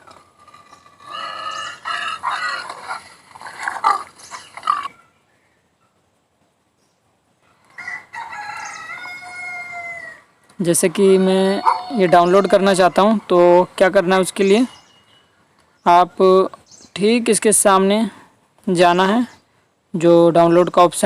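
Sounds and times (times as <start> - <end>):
rooster crowing: 7.6 - 10.3, 11.3 - 13.2.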